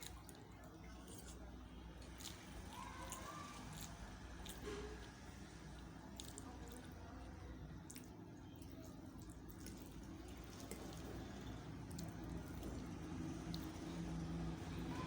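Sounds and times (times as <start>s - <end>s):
wet eating sounds: 0.0s - 15.0s.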